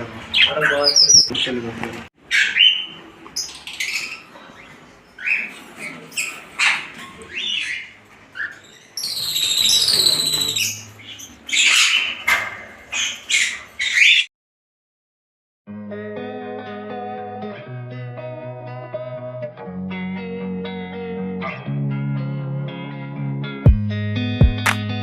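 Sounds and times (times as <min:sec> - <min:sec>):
birds squawking and chirping: 0:00.1 - 0:01.6, 0:02.2 - 0:14.3.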